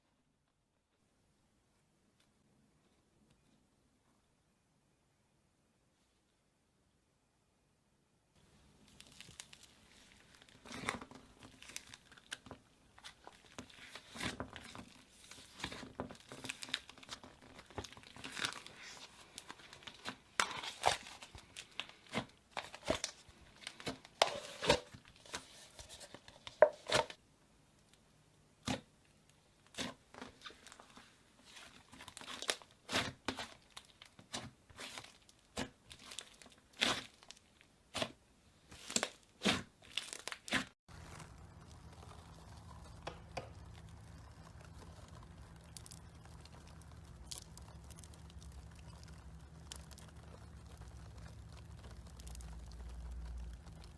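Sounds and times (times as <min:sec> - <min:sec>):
slime crackling and popping: 0:08.7 - 0:25.2, 0:31.6 - 0:38.2, 0:38.8 - 0:53.9.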